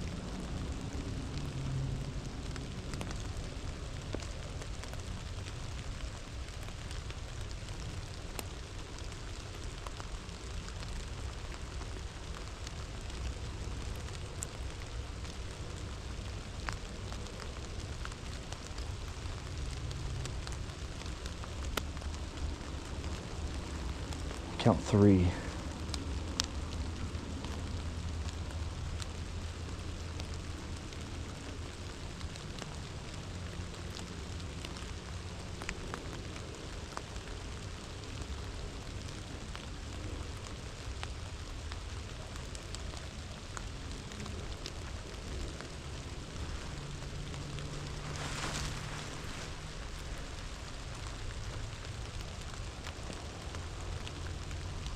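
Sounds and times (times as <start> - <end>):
low steady rumble: 0.0 - 54.9
raindrops ticking: 0.0 - 54.9
steady rain falling: 0.0 - 54.9
low rumble: 45.2 - 53.2.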